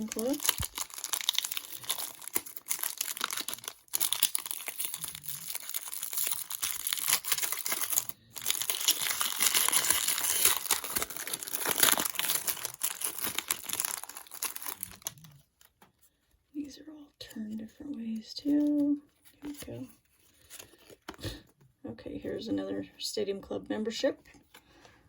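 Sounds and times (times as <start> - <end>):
card pack wrapper crinkling and tearing: 0.0 - 15.7, 18.4 - 21.4.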